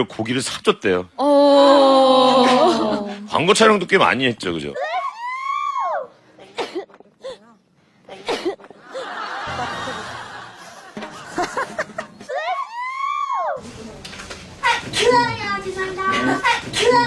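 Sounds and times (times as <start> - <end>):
people laughing and snickering: 2.0 - 3.3, 8.6 - 12.7.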